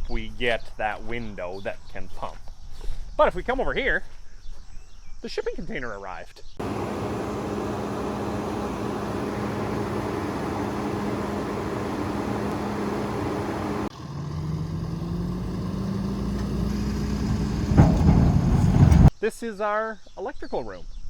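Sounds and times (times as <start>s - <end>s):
engine hum rising in pitch: 6.6s - 19.1s
engine humming: 6.6s - 19.1s.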